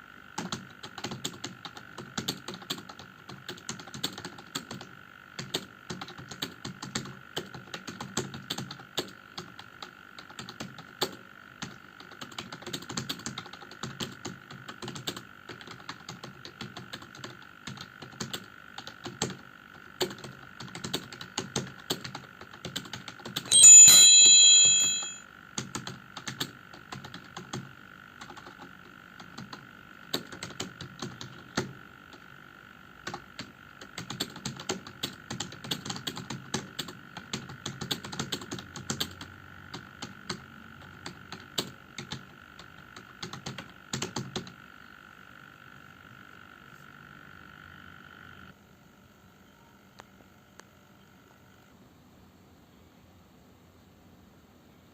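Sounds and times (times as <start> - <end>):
computer keyboard typing: 0.4 - 23.7, 24.3 - 32.2, 33.0 - 44.6
faint high whine: 23.5 - 25.2, 46.6 - 54.9
loud ringing tone: 23.5 - 25.2.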